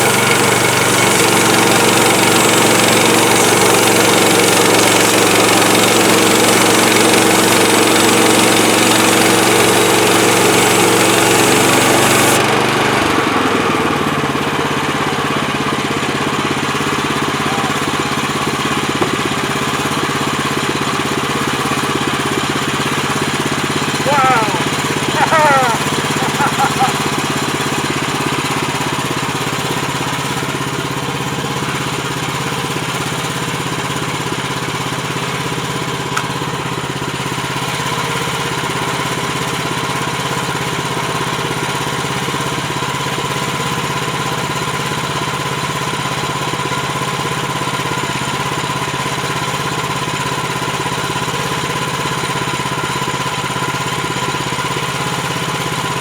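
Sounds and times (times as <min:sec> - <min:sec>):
sawmill engine running: 0:00.0 - 0:56.0.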